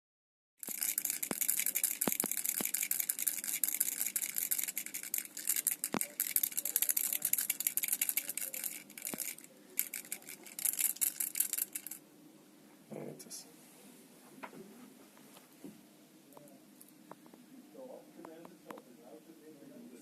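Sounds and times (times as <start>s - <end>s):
power bank rattling when shaken: 0.6s - 12.0s.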